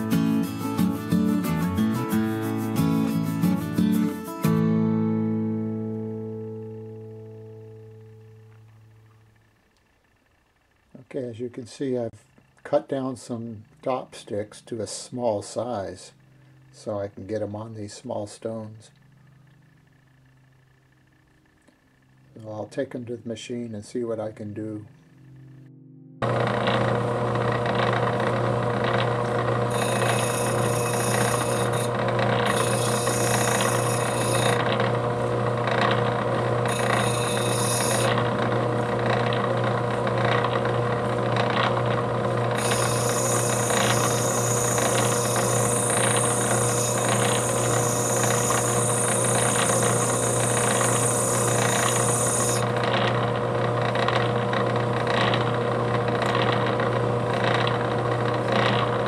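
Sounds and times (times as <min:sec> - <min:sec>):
grinding machine motor running: 0:26.2 - 0:59.0
stone grinding hiss: 0:29.7 - 0:34.7, 0:36.7 - 0:38.2, 0:42.6 - 0:52.6.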